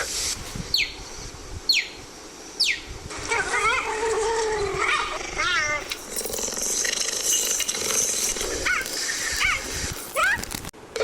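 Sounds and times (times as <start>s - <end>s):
big cat chirping and mewing: 3.1s - 10.5s.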